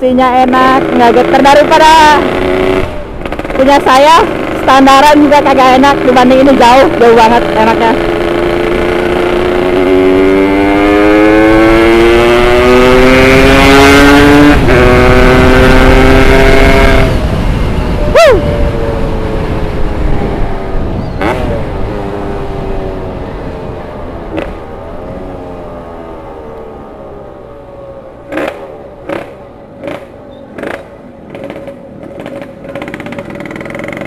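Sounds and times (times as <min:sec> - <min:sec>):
two-stroke engine accelerating: 0:00.2 - 0:34.0.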